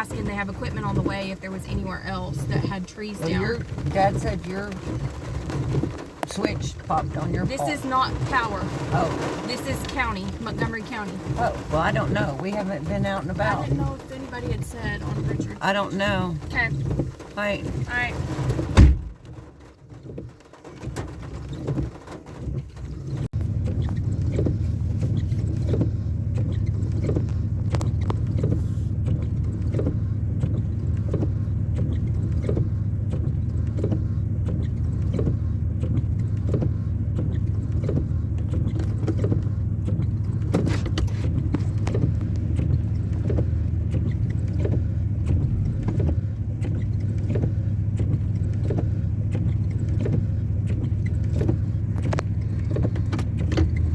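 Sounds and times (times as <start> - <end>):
engine running steadily: 0.0 - 53.9
faint regular tick: 19.2 - 53.9.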